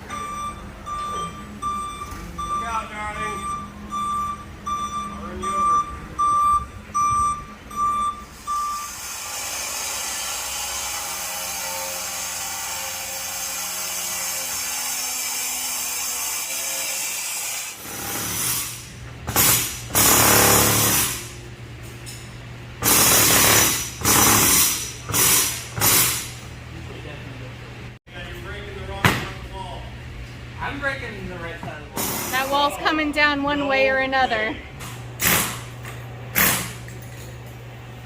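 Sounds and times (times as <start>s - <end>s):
truck reversing beeps: 0.0s - 9.0s
steady background hum: 0.0s - 12.4s, 17.8s - 38.0s
power tool breaking wall: 12.4s - 21.3s, 22.8s - 26.4s, 35.2s - 35.7s, 36.3s - 36.8s.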